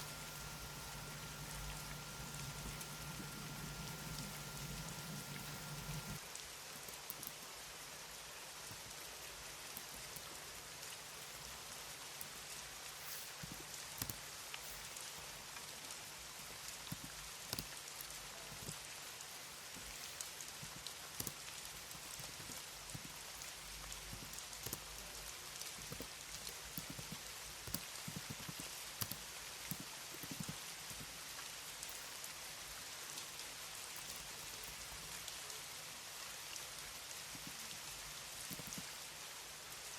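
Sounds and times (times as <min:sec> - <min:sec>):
keyboard typing: 0:00.0 - 0:06.2
rain-like hiss: 0:00.0 - 0:39.9.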